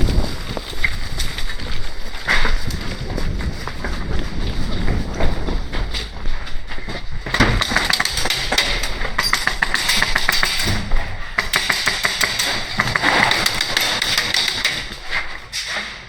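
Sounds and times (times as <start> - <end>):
airsoft guns firing clicks: 7.3 - 15.8
impact snaps: 7.3 - 16.0.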